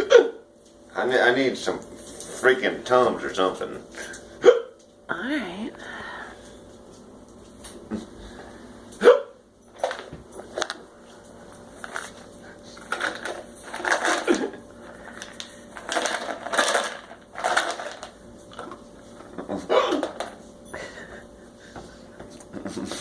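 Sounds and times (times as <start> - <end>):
man hiccuping: 0.0 - 0.4, 19.6 - 20.0.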